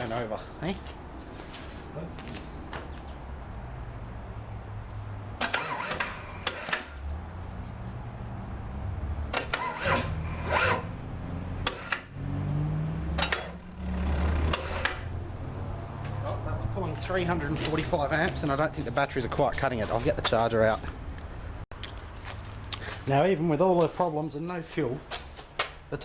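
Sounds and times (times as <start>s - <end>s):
starter motor cranking diesel engine: 5.4s - 7.0s, 9.3s - 10.9s, 11.6s - 12.1s, 13.2s - 15.1s
sharp clicks or knocks: 5.4s - 7.2s, 9.3s - 10.8s, 11.6s - 12.1s, 13.1s - 15.1s.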